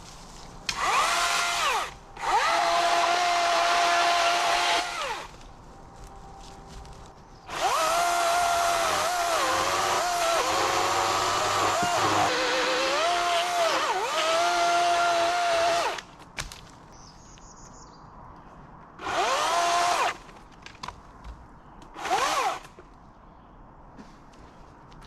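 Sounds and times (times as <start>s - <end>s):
chainsaw cutting wood: 0.7s - 5.3s, 7.5s - 16.1s, 19.0s - 20.2s, 22.0s - 22.7s
chainsaw revs: 0.7s - 5.3s, 7.5s - 16.0s, 19.0s - 20.2s, 22.0s - 22.6s.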